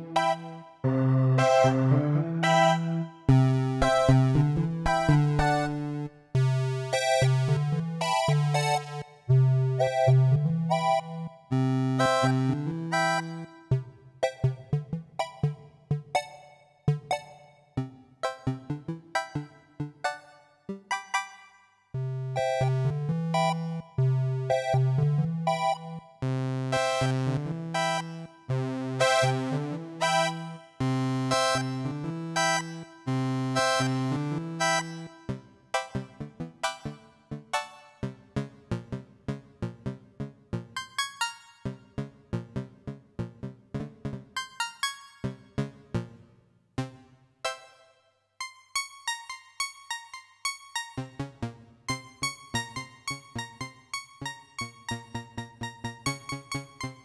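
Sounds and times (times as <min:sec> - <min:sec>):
electronic keyboard rising notes: 0:00.0 - 0:03.8
electronic keyboard tune: 0:00.0 - 0:06.1, 0:09.8 - 0:28.3.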